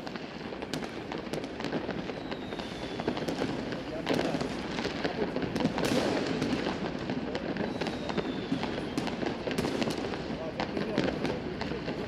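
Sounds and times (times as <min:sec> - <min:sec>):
fireworks bangs and cracks: 0:00.0 - 0:12.0
firework whistle: 0:01.7 - 0:04.6, 0:07.6 - 0:10.0.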